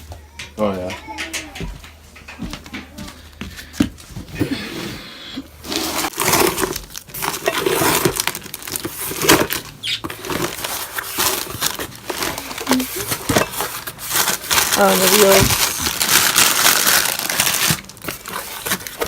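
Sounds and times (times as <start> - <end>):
plastic packaging crinkling: 5.6 - 19.0.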